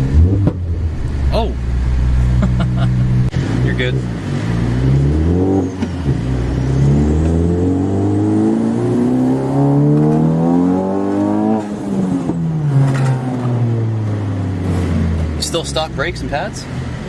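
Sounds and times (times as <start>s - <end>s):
car engine accelerating hard: 0.0s - 17.0s.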